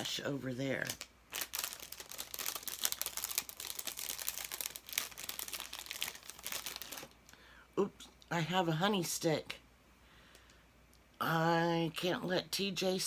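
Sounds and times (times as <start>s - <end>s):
packaging crinkling and rustling: 0.6s - 7.3s.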